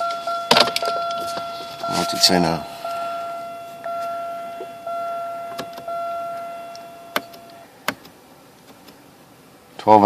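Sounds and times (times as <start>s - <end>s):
electronic warning chime: 0.0s - 7.7s.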